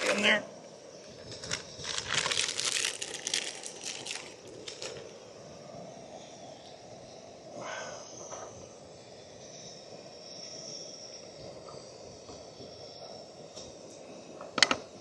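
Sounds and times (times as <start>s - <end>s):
plastic packaging crinkling: 1.3s - 5.1s.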